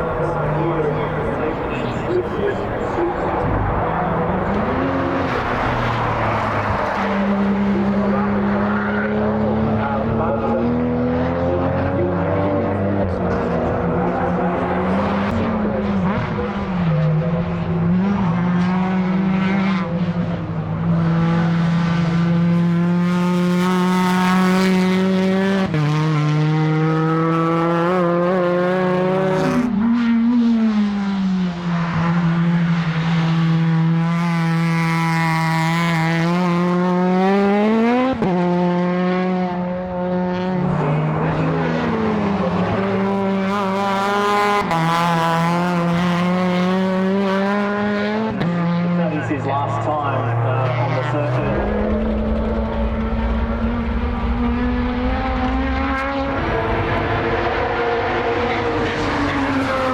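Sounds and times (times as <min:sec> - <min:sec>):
race car engine revving: 0:00.0 - 0:59.9.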